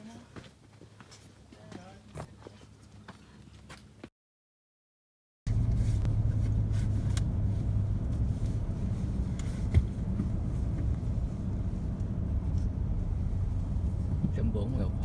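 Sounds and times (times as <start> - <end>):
car rumble inside cabin: 5.5 - 15.0.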